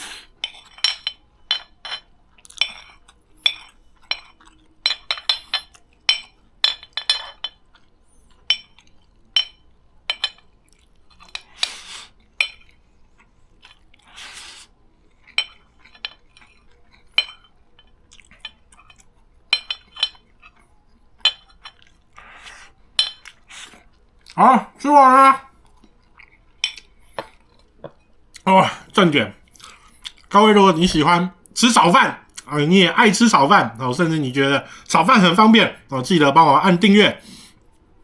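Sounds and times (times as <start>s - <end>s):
spoon clinking on a dish: 0.4s - 7.7s, 8.4s - 10.5s, 17.2s - 18.6s, 19.5s - 20.3s, 21.2s - 21.9s, 23.0s - 23.4s.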